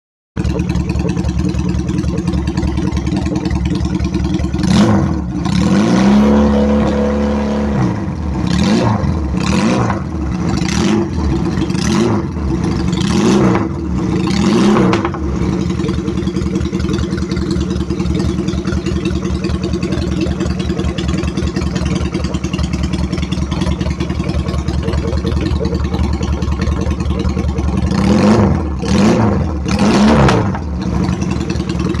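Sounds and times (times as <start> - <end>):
motorcycle engine idling and revving: 0.4 - 32.0.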